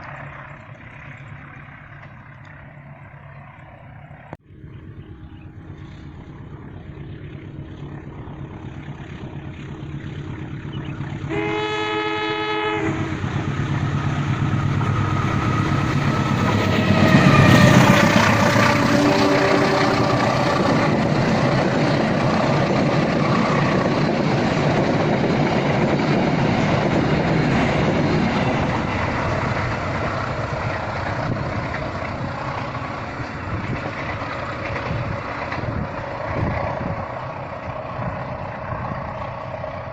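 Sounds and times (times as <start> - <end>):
train horn: 11.3 - 13.3, 16.8 - 20.4
train carriages rumbling and clattering: 12.6 - 39.9.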